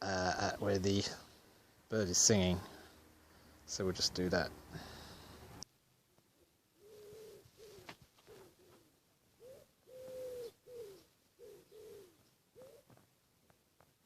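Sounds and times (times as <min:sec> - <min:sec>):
woodpigeon cooing: 0:06.3 - 0:13.1.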